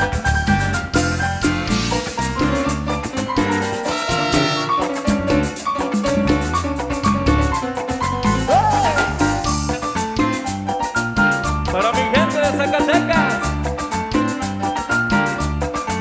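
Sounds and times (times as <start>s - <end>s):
drums: 0.0s - 3.8s, 5.3s - 11.7s
band playing cumbia: 0.0s - 16.0s
bass notes: 0.0s - 16.0s.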